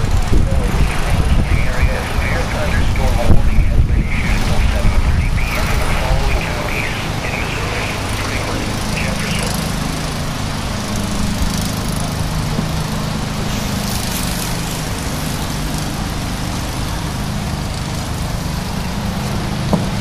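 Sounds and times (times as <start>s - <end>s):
engine running steadily: 0.0s - 20.0s
broad hiss: 13.3s - 15.9s.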